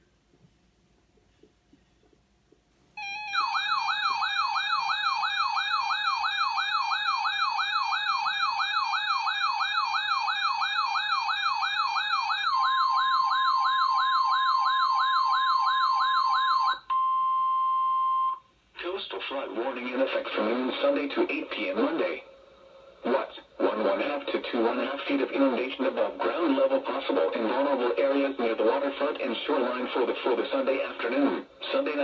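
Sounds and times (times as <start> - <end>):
warbling alert siren: 3.0 - 16.9.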